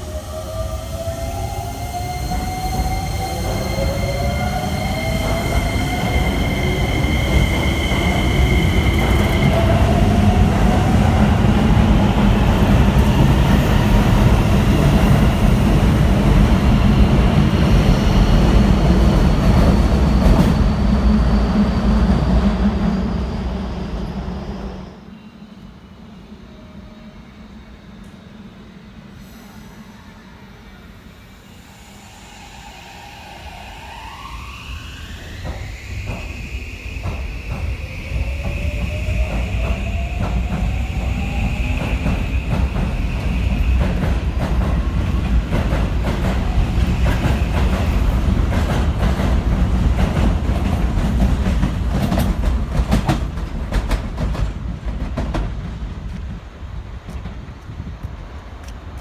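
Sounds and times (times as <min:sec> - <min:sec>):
train wheels rumbling on rails: 0:00.0 - 0:25.0, 0:32.7 - 0:59.0
electric train running: 0:00.6 - 0:20.6
train motor whine: 0:01.8 - 0:10.7.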